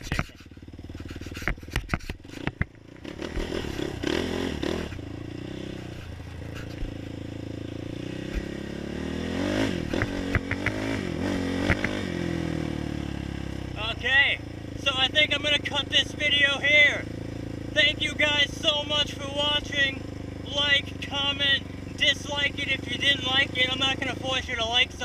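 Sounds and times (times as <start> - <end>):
sharp clicks and knocks: 0.0 - 3.9, 9.9 - 10.9, 11.6 - 12.0
quad engine running: 0.0 - 25.0.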